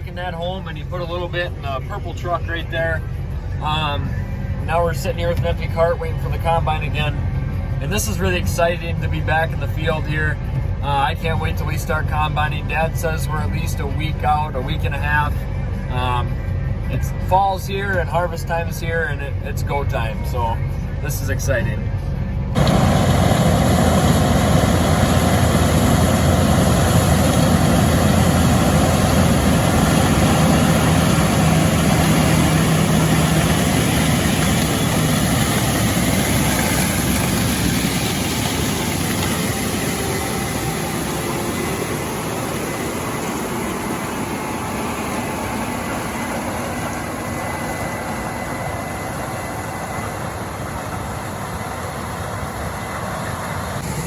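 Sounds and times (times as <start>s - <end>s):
large diesel engine running: 0.0s - 54.0s.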